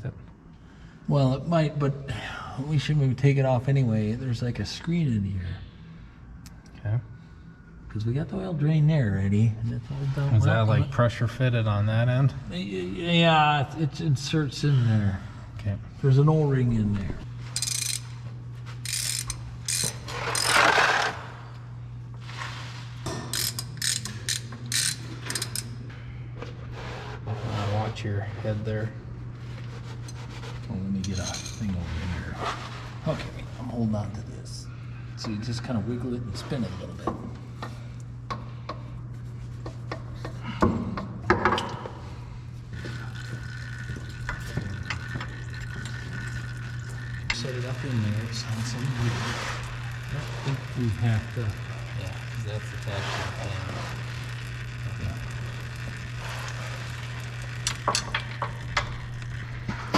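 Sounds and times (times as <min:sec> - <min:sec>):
steady low hum: 0:00.0 - 0:59.9
ratchet wrench clicking: 0:17.6 - 0:18.1, 0:18.8 - 0:20.8, 0:23.2 - 0:25.7.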